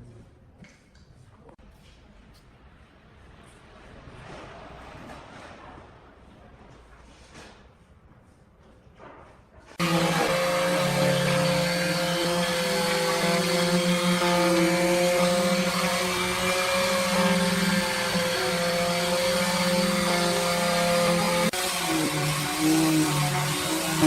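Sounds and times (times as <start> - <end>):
sawmill saw running: 9.8 - 24.0.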